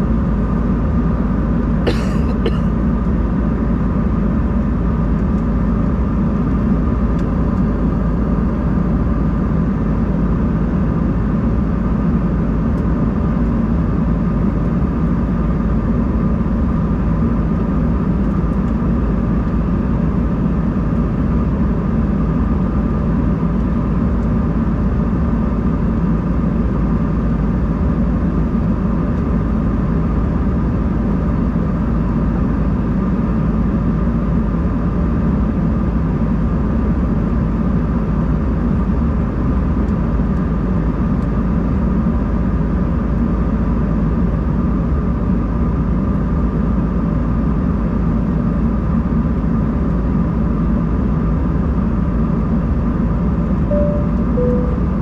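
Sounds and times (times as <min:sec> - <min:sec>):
airplane cabin engine drone: 0:00.0 - 0:55.0
faint steady whine: 0:53.7 - 0:55.0.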